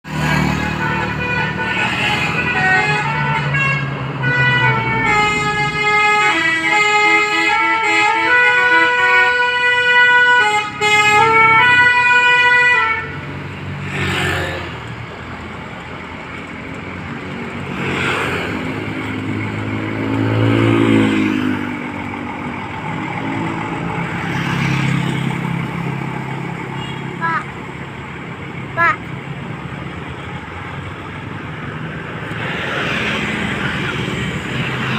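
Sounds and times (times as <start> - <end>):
vehicle engine and traffic noise: 0.0 - 34.9
musical air horn playing a tune: 0.8 - 13.2.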